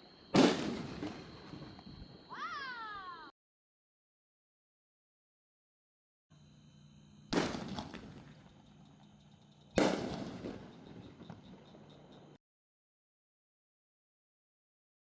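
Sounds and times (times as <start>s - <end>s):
firework shell bursts: 7.4s - 8.8s, 9.7s - 11.9s.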